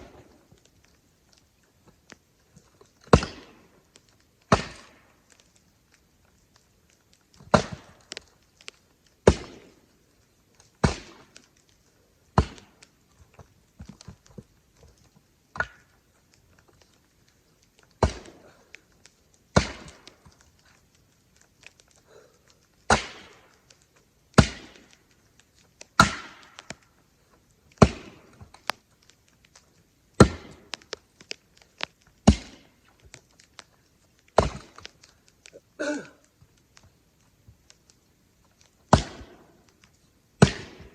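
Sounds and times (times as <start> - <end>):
axe chopping firewood: 3.0 - 3.7, 4.5 - 5.0, 7.4 - 8.2, 9.2 - 9.7, 10.8 - 11.4, 12.3 - 12.8, 18.0 - 18.5, 19.5 - 20.2, 22.8 - 23.5, 24.4 - 25.0, 26.0 - 26.8, 27.8 - 28.6, 30.2 - 32.8, 34.3 - 34.9, 38.9 - 39.4, 40.4 - 40.9.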